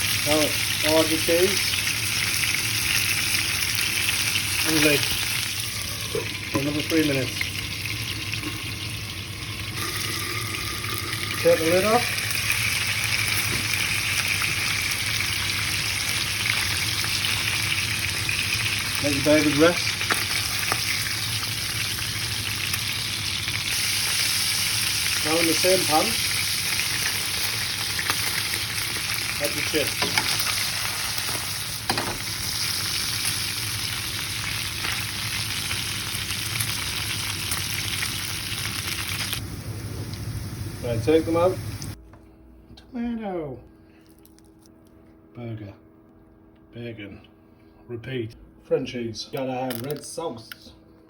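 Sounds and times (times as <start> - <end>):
burgers sizzling in a frying pan: 0.0 - 42.0.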